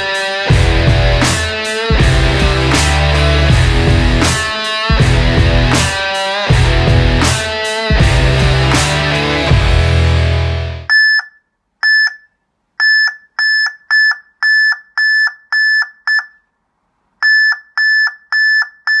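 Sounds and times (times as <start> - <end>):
backup alarm beeping: 10.9 - 16.5, 17.2 - 19.0.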